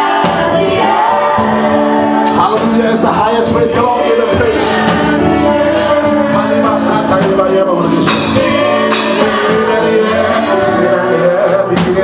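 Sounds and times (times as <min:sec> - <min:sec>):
drums: 0:00.0 - 0:12.0
gospel band playing: 0:00.0 - 0:12.0
keyboard chords: 0:00.0 - 0:12.0
person singing: 0:00.0 - 0:12.0.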